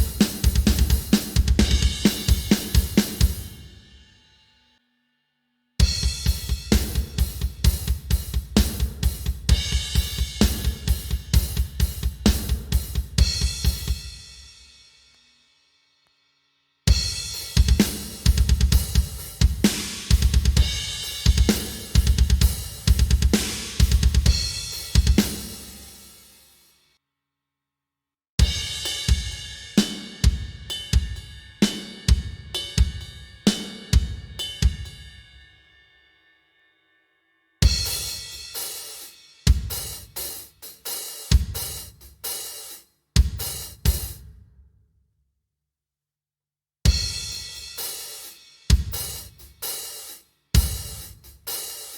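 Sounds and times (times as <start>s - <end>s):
snare drum hits: 23.3s - 24.1s.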